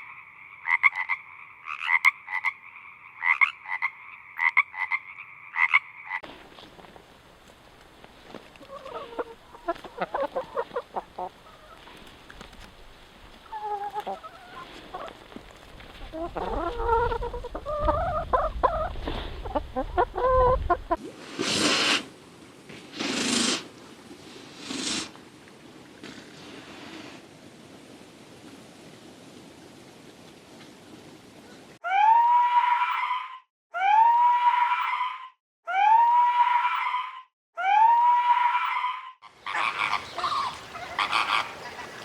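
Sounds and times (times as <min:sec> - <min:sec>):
frog-like croaking: 0:00.0 - 0:06.2, 0:37.8 - 0:41.6
chicken clucking: 0:08.7 - 0:11.9, 0:13.5 - 0:15.2, 0:16.1 - 0:21.0, 0:39.5 - 0:41.9.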